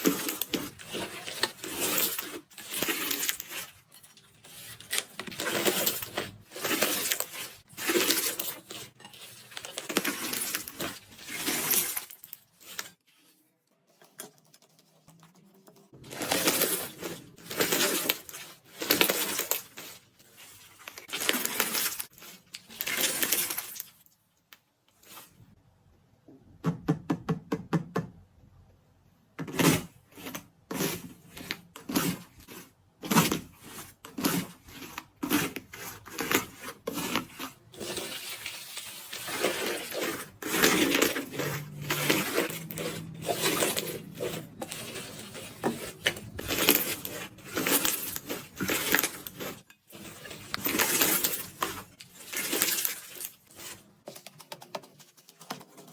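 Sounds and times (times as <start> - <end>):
slime crust crackling and crunching: 34.2 - 55.9.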